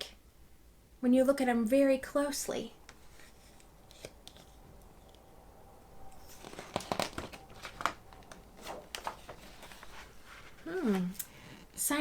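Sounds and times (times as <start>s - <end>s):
paper rustling and crinkling: 6.1s - 11.8s.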